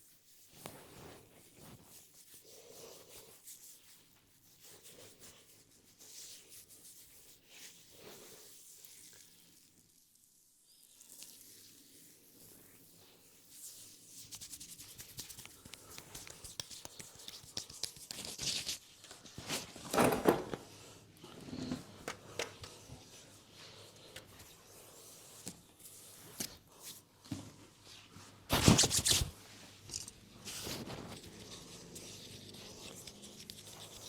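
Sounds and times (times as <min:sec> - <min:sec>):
hands rubbing hair: 0:12.0 - 0:19.8, 0:27.8 - 0:34.0.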